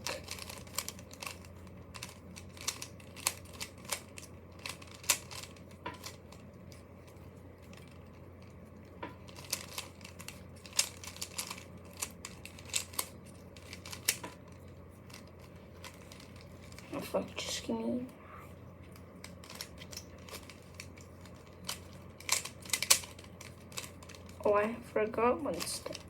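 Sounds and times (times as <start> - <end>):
puzzle cube clicking: 0.0 - 6.2, 9.3 - 14.3, 19.2 - 24.4.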